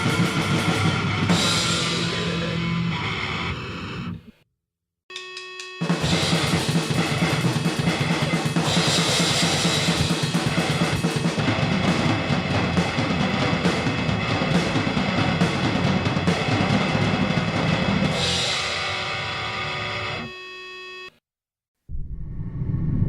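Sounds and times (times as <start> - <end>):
fast loud drumming: 6.0 - 18.4.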